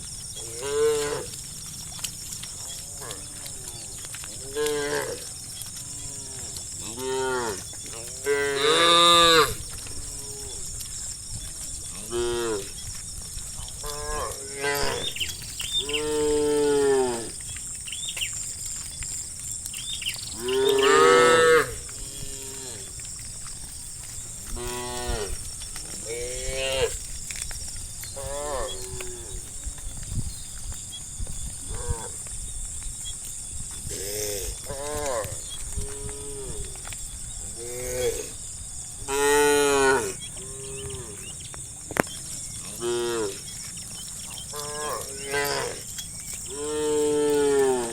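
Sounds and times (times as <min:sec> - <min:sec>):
cattle mooing: 0:06.0 - 0:09.6, 0:13.9 - 0:18.1, 0:19.7 - 0:23.3, 0:24.5 - 0:27.0, 0:28.2 - 0:29.6, 0:44.4 - 0:45.9.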